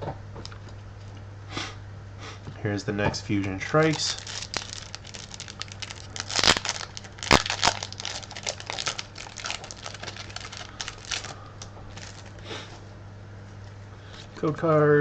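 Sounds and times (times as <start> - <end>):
foil wrapper crinkling: 3.7 - 12.4.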